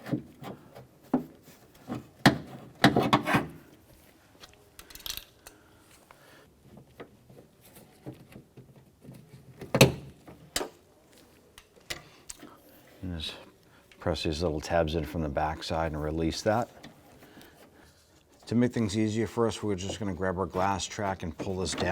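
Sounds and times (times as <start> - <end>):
plastic and metal parts rattling: 21.4 - 21.9.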